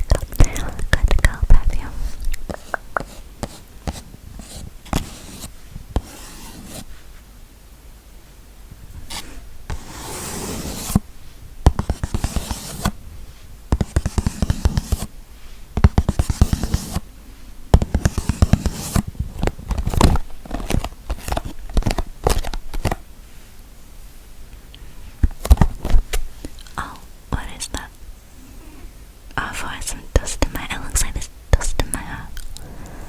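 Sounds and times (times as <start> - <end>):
fingernails scratching: 2.5 - 6.9, 9.1 - 11.0, 11.8 - 13.0, 13.8 - 15.1, 16.0 - 17.0, 17.8 - 19.1.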